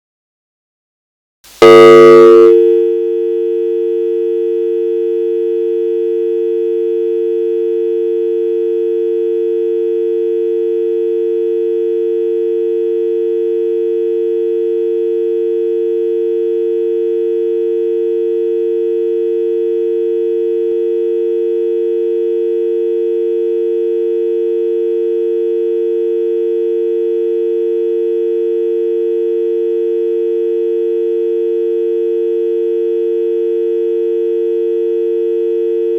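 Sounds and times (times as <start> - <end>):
telephone dial tone: 1.6 - 35.9.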